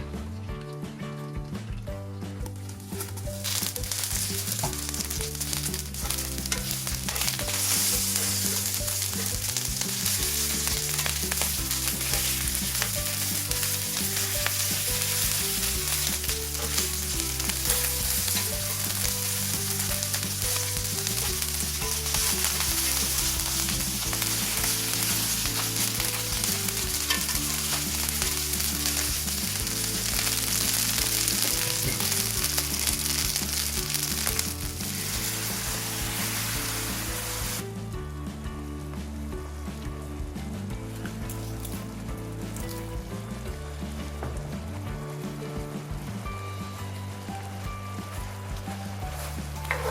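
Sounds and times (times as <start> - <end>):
chicken wings sizzling in oil: 2.4 - 40.3, 41.0 - 49.9
food stirred in a pan: 2.6 - 37.6.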